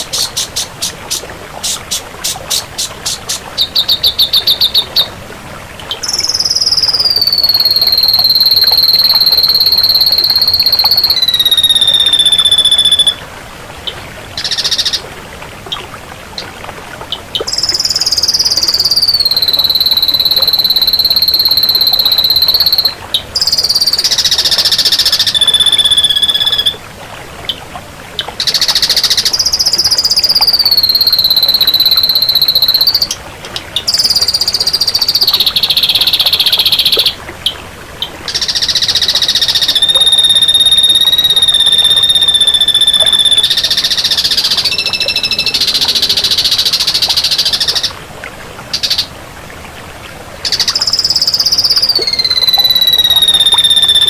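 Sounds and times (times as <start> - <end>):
bird singing long buzzy notes: 0.0 - 5.1, 6.0 - 13.2, 38.3 - 48.0, 50.6 - 54.0
bird harsh pulsed calls: 0.0 - 5.2, 6.0 - 13.2, 14.4 - 15.0, 17.5 - 26.8, 28.4 - 33.2, 33.8 - 37.2, 38.3 - 48.0, 50.5 - 54.0.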